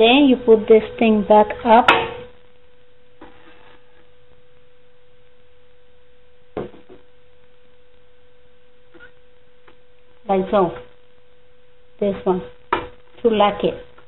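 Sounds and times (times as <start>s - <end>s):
steady electrical hum: 0.0s - 14.0s.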